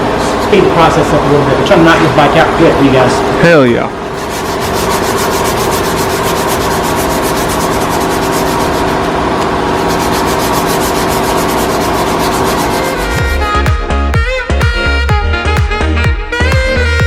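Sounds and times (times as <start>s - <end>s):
sander sanding metal: 3.9s - 13.7s
music with deep bass beat: 12.1s - 17.0s.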